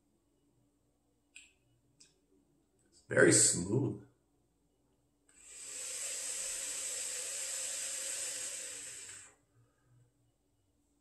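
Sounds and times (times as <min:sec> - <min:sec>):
breath rushing through a vape: 0:05.3 - 0:09.4.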